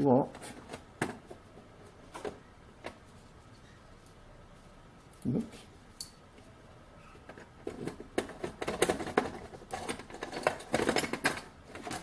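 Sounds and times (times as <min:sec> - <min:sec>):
plastic box clicks and rattles: 0:07.3 - 0:12.0.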